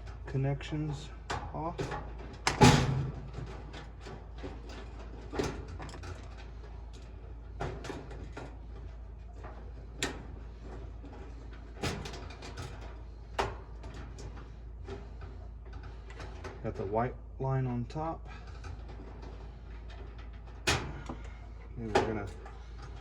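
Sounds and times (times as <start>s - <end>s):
low steady hum: 0.0s - 23.0s
metal parts clicking and clunking: 0.0s - 23.0s.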